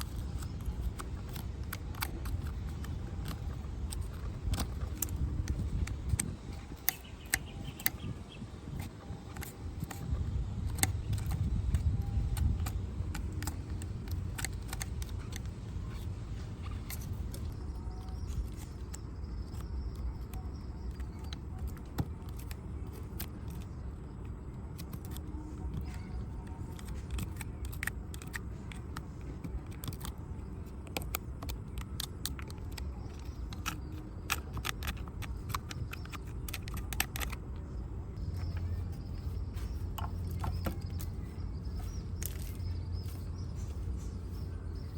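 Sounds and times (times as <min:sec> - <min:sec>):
steady low rumble: 0:00.0 - 0:44.9
small clicks and taps of tools: 0:08.7 - 0:44.9.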